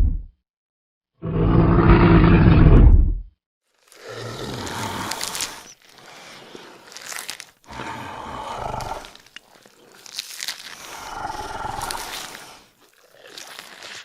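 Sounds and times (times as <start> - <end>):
dinosaur growl: 1.2 - 3.0, 4.0 - 5.6, 7.7 - 9.2, 10.9 - 12.5
dinosaur roars: 1.2 - 3.0, 7.7 - 9.2, 10.9 - 12.4.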